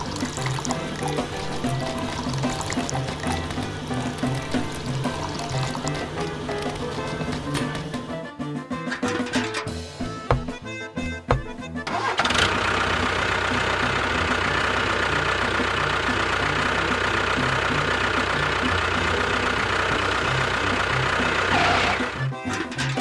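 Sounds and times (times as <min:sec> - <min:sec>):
small motor whining: 0:16.8 - 0:22.5.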